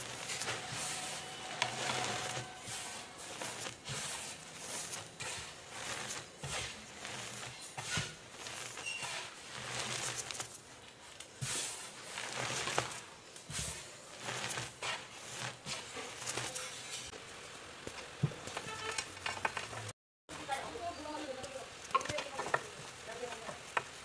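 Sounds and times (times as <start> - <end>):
chalk blocks crunching and crumbling: 0.0 - 17.2, 17.9 - 19.9, 21.2 - 24.0.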